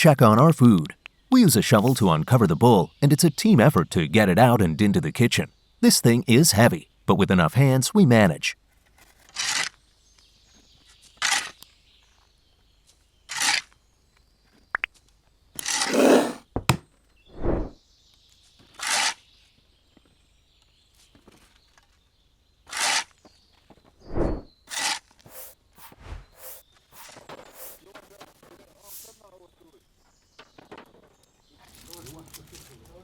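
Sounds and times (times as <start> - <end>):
cooking gear scraping and rustling: 15.6 - 16.8.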